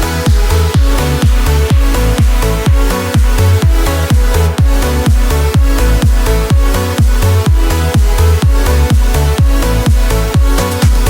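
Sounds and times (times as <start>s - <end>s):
electronic dance music: 0.0s - 11.0s
steady kick drum: 0.0s - 11.0s
sustained synth chords: 0.0s - 11.0s.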